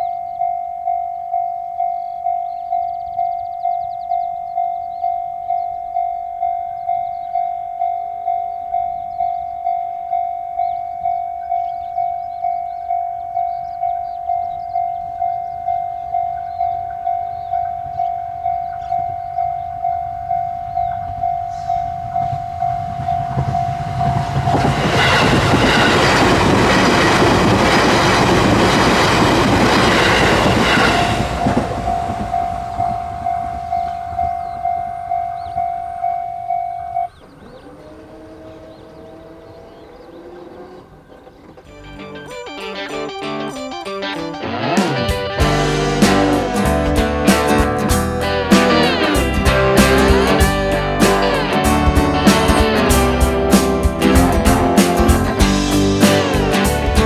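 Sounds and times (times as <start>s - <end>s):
level crossing warning bell: 0.0s - 37.2s, 41.7s - 44.5s
train wheels on track: 21.5s - 35.4s.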